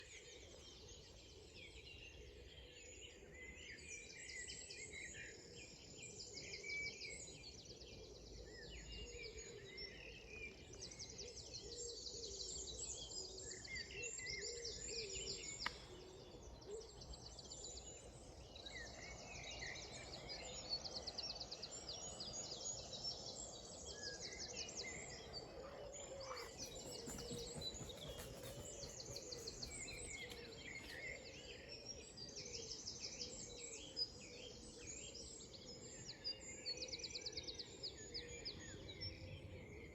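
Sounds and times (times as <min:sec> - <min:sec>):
songbirds singing: 0:21.3 - 0:34.6
faint background noise: 0:24.4 - 0:32.7.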